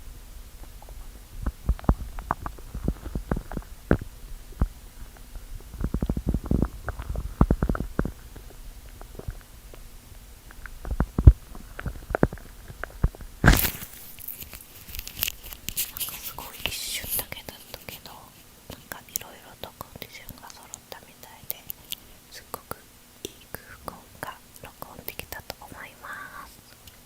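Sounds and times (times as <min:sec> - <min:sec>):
stomach growling: 0:00.0 - 0:15.7.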